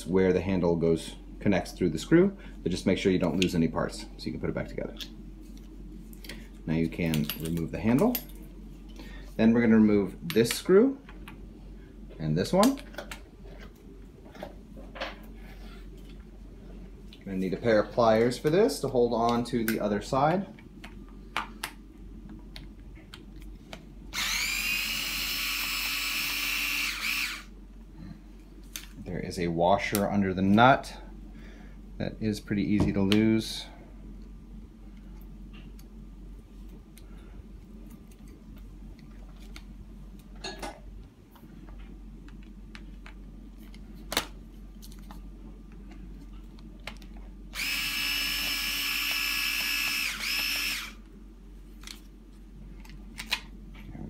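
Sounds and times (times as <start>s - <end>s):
cordless drill running: 24.1s - 27.5s, 47.5s - 51.0s.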